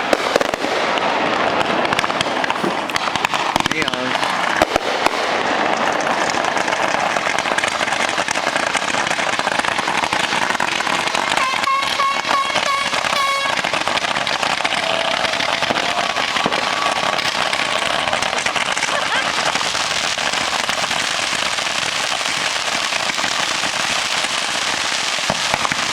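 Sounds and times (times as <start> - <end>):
fireworks crackling: 0.0 - 25.9
pulsing firework whistle: 10.7 - 20.7.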